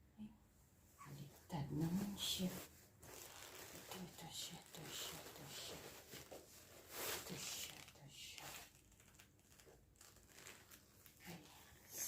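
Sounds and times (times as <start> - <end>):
rustling of bag handling: 1.9 - 11.4.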